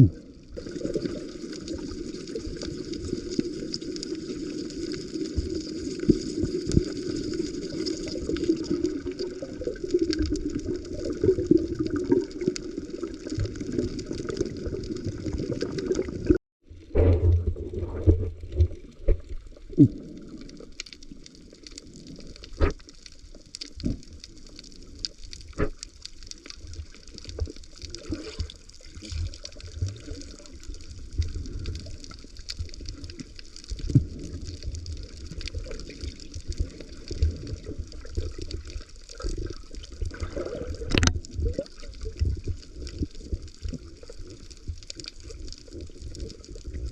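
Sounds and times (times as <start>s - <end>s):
gurgling underwater water: 0.0s - 46.9s
sharp clicks underwater: 22.4s - 24.1s, 25.0s - 30.4s, 31.2s - 45.4s.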